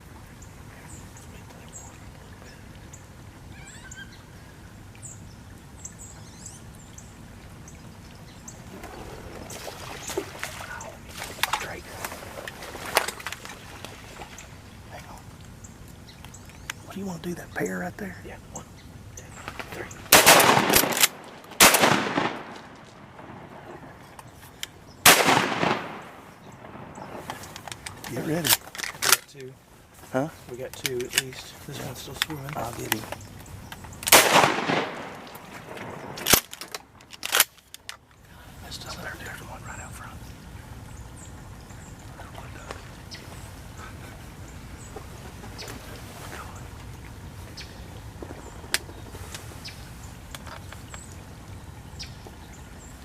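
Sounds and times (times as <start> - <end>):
birds chirping: 0.0 - 53.0
low outdoor rumble: 0.0 - 53.0
shotgun blasts with echo: 19.7 - 24.0, 25.0 - 27.4, 34.1 - 36.5
rustling noise: 42.6 - 50.9.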